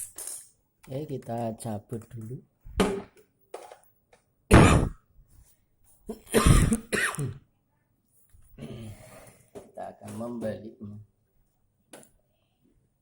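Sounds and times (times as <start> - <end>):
man coughing: 6.2 - 7.4.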